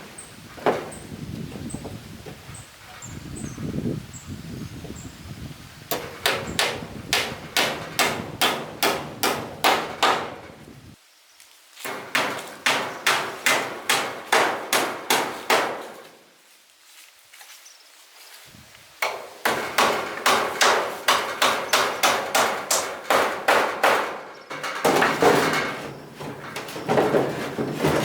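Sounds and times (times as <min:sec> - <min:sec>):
hammer striking wood: 0:05.9 - 0:10.6, 0:11.9 - 0:16.0, 0:19.0 - 0:25.5.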